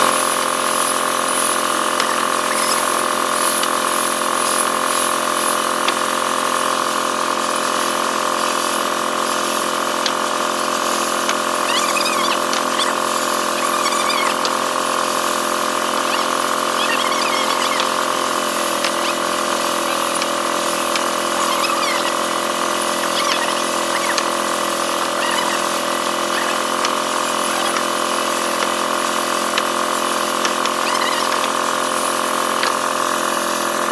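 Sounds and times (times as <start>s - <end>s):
woodworking machine whining: 0.0s - 33.9s
short wavering squeals: 1.3s - 3.6s, 10.2s - 32.9s.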